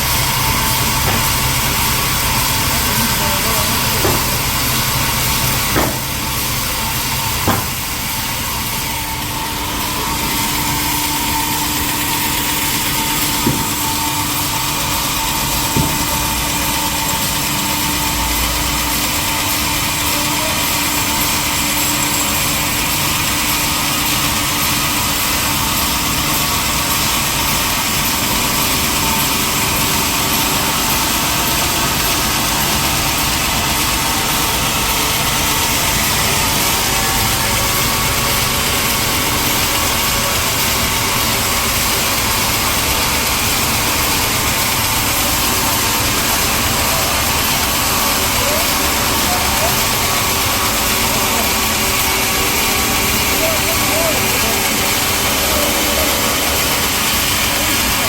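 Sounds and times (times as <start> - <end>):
sawmill machinery running: 0.0 - 58.0
sharp knocks: 0.8 - 1.6, 4.0 - 4.4, 5.6 - 6.2, 7.4 - 7.9, 13.4 - 14.1, 15.7 - 16.2.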